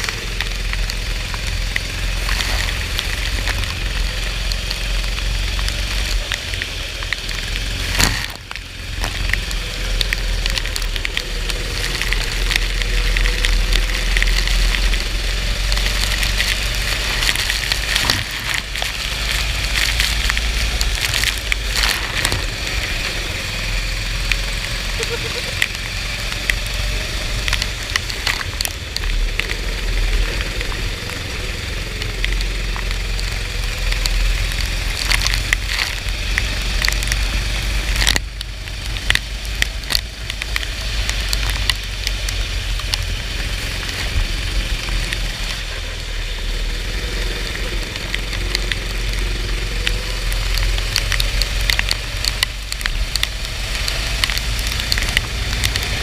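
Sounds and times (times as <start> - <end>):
kart engine racing: 0.0 - 41.2
rain and spray crackling: 0.0 - 56.0.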